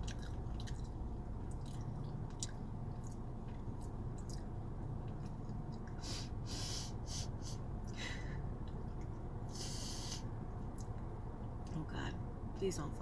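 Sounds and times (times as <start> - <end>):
woman breathing through nose: 6.0 - 8.5, 9.5 - 10.2.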